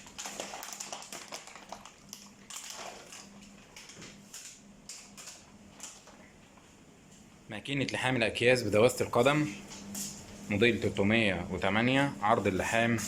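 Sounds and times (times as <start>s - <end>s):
plastic bag crinkling: 0.0s - 4.0s.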